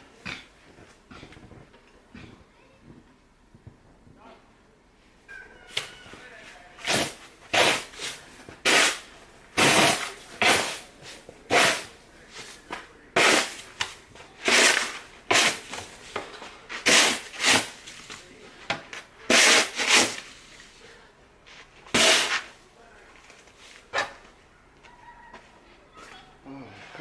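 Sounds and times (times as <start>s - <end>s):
snow shovel scraping through snow: 6.8s - 12.6s, 13.2s - 13.8s, 14.4s - 16.0s, 16.7s - 18.1s, 19.3s - 20.6s, 22.0s - 22.5s.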